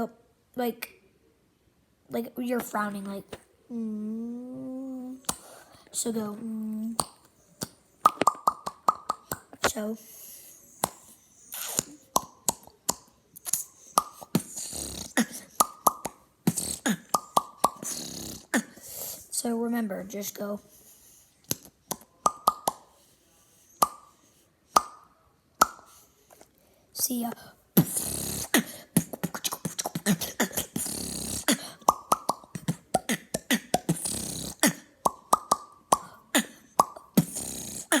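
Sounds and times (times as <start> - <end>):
beatboxed mouth pops: 5.2 - 5.5, 7.0 - 9.9, 10.7 - 18.9, 21.4 - 22.9, 23.8 - 24.1, 24.8 - 26.0, 27.8 - 38.0.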